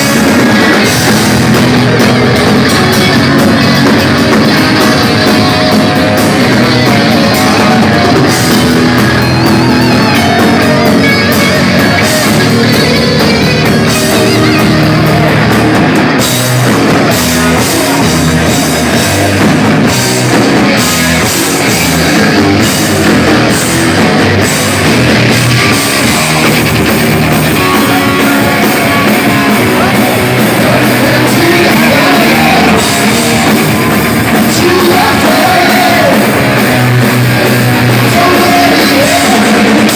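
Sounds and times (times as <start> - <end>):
heavy metal band playing live: 0.0 - 39.9.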